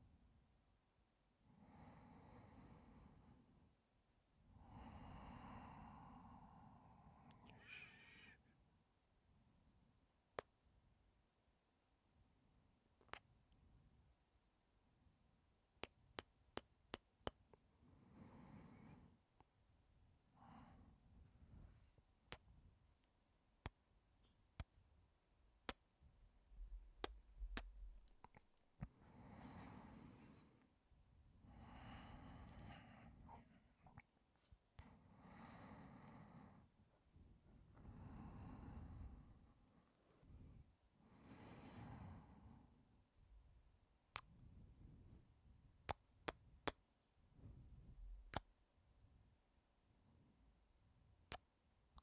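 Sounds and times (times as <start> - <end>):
soft breath: 1.5 - 3.5, 4.6 - 8.6, 17.8 - 22.0, 26.3 - 30.8, 31.4 - 42.9.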